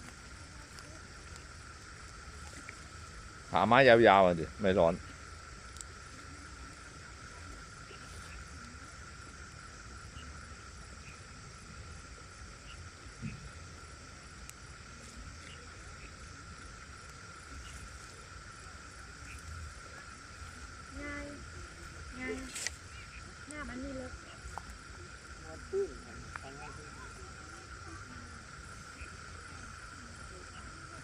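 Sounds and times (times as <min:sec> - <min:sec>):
insects chirring: 0:00.0 - 0:31.0
low outdoor rumble: 0:00.0 - 0:31.0
faint clicks: 0:05.7 - 0:06.0.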